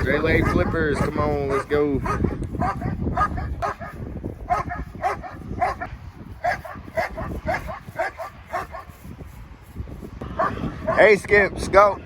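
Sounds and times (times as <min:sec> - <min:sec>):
dog barking high-pitched: 0:00.3 - 0:08.9.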